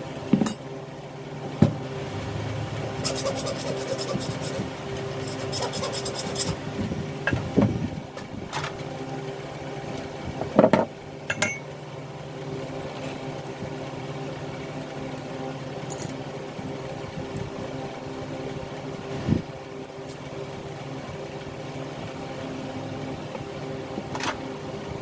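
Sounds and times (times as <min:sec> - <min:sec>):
low machine hum: 0:00.0 - 0:25.0
metal tools clinking: 0:11.3 - 0:11.7, 0:15.9 - 0:16.2.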